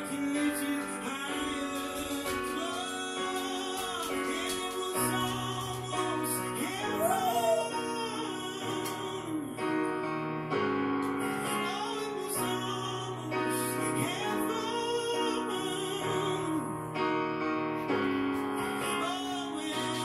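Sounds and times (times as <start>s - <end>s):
man singing wordless runs: 0.0s - 9.5s
piano chords: 0.0s - 20.0s.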